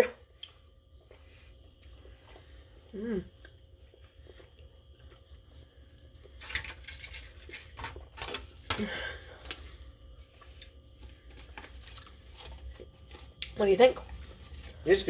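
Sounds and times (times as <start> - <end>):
closed-mouth hum: 0.0 - 6.4
quiet chewing: 0.3 - 6.4, 9.2 - 14.8.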